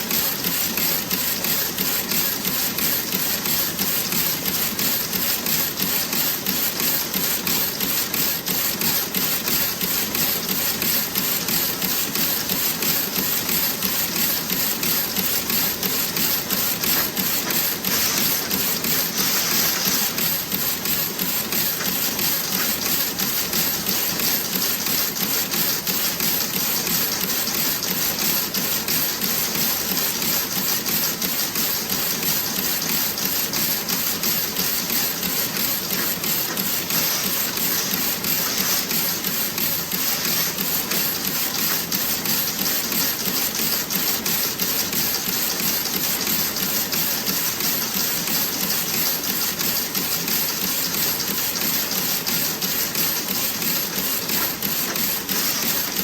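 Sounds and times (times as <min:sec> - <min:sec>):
knitting machine clattering: 0:10.0 - 0:25.0, 0:34.3 - 0:43.8, 0:44.6 - 0:56.0.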